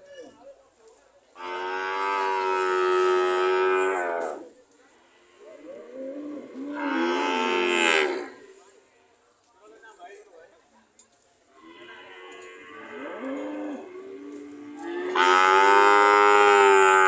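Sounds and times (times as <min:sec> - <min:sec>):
cows mooing: 0:05.3 - 0:08.4, 0:12.0 - 0:17.0.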